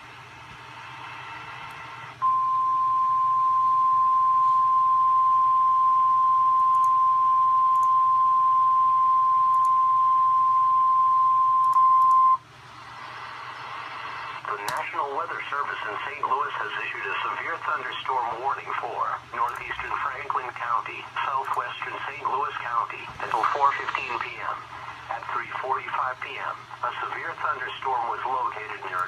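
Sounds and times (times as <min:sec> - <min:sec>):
faint radio hiss: 0:00.0 - 0:02.2, 0:12.4 - 0:29.0.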